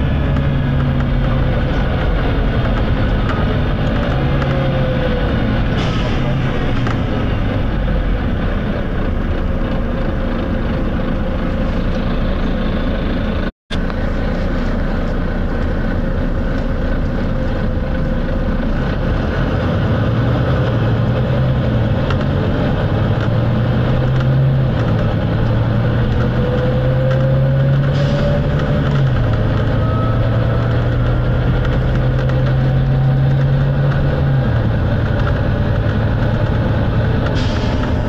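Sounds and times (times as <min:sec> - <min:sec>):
bus diesel engine under load: 0:00.0 - 0:38.0
drivetrain and road noise: 0:00.0 - 0:38.0.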